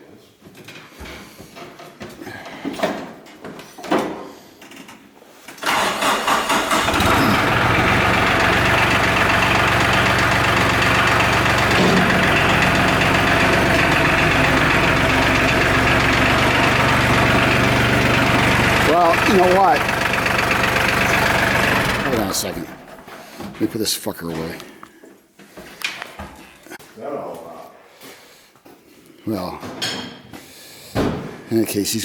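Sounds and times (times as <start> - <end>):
tractor diesel engine starting: 5.6 - 23.2
knocks: 11.6 - 13.7.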